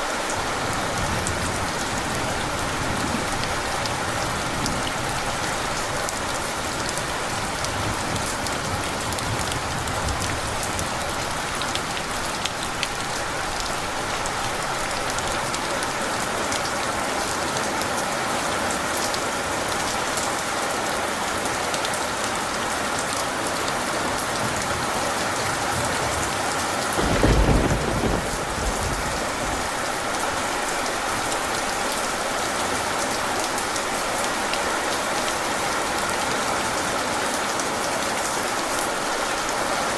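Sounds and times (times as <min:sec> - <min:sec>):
heavy rain falling: 0:00.0 - 0:39.9
deep rumble of thunder: 0:24.8 - 0:30.5.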